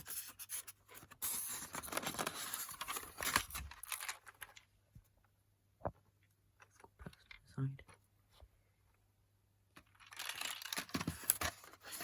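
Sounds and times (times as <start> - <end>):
rustling and scraping of packaging: 0.0 - 4.7, 9.8 - 12.0.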